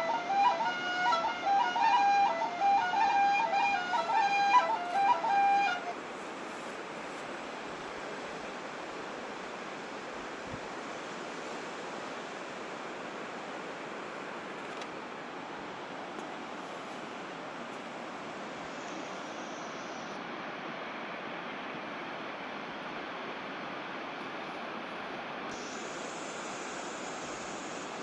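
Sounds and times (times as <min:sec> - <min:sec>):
flute melody: 0:00.0 - 0:06.0
flowing water rushing: 0:00.0 - 0:28.0.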